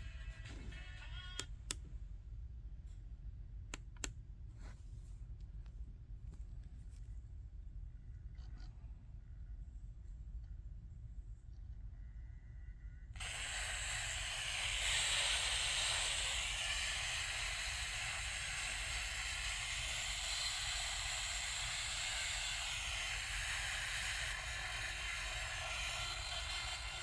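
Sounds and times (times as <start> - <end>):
cd player hissing: 13.2 - 27.0.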